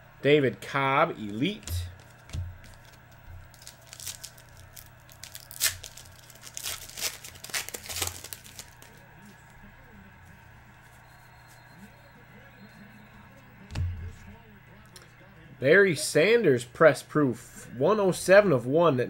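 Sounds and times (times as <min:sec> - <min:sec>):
cards clicking: 0:01.2 - 0:09.6
wrapper crinkling and tearing: 0:01.9 - 0:09.4.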